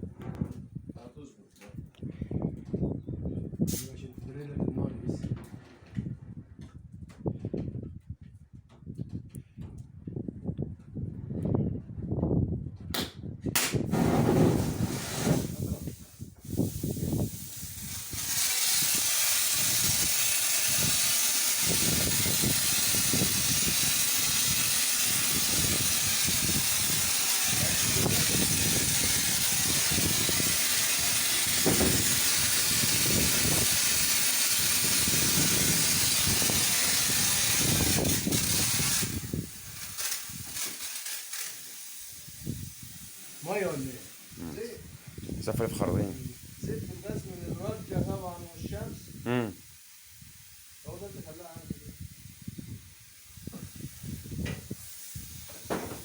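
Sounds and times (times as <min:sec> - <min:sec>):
high-pressure jet hissing: 0:13.9 - 0:56.0.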